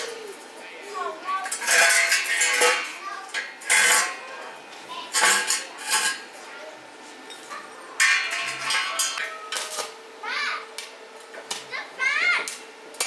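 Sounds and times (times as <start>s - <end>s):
metal tools clinking and scraping: 1.4s - 6.5s, 7.2s - 9.9s.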